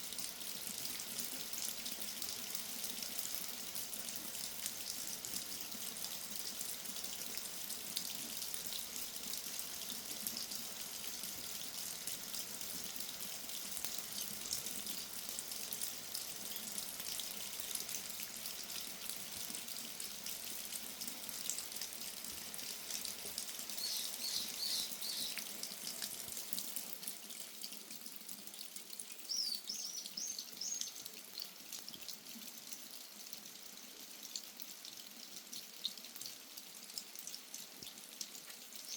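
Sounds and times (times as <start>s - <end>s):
rain pattering and dripping: 0.0s - 38.9s
birds chirping: 23.8s - 25.4s.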